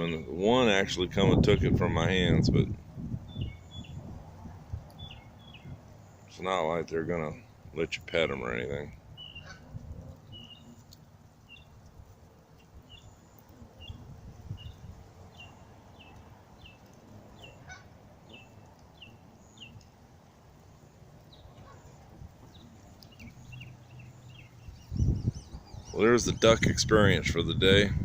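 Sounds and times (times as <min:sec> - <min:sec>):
low wind rumble: 0:00.0 - 0:28.0
geese calling: 0:09.2 - 0:11.7, 0:17.4 - 0:19.8.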